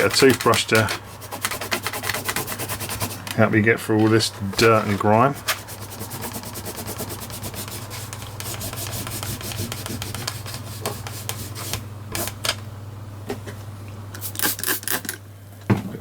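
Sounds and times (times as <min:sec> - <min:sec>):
cloth rubbing on plastic: 0:00.0 - 0:12.4.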